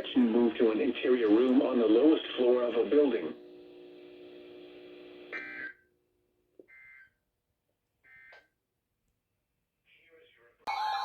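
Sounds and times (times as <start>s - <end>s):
low broadcast hum: 0.0s - 5.4s.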